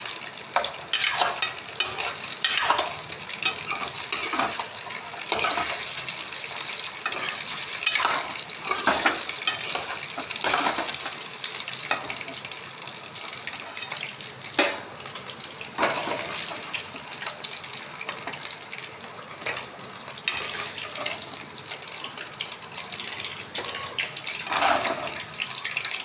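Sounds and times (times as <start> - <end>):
food sizzling in a frying pan: 0.0 - 26.0
spatula scraping a pan: 0.6 - 11.2, 15.8 - 16.7, 20.3 - 21.4, 22.8 - 25.7.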